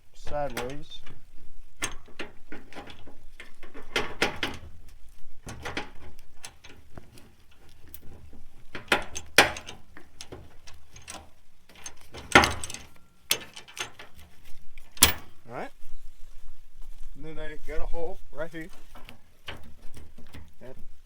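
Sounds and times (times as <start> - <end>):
metal hardware clanking and scraping: 0.2 - 4.8, 5.4 - 15.4.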